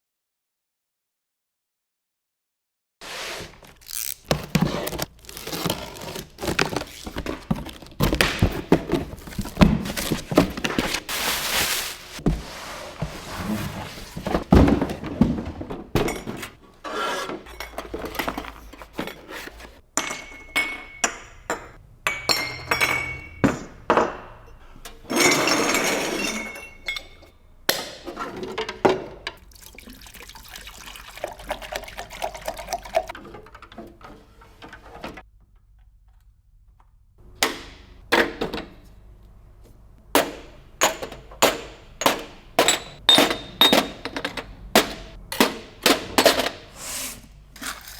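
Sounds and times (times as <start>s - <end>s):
packaging rustling: 3.6s - 12.3s
knocks and clicks of handled parts: 40.1s - 46.7s.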